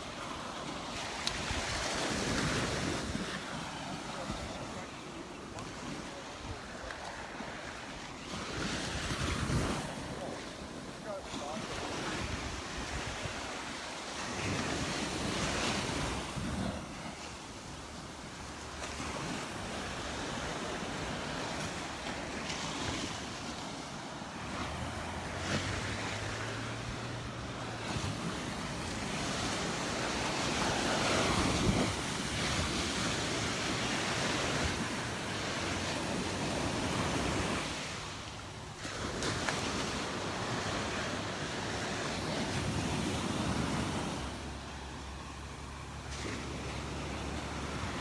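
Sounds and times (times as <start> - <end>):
surf washing onto beach: 0.0 - 48.0
wind buffeting microphone: 19.1 - 37.9.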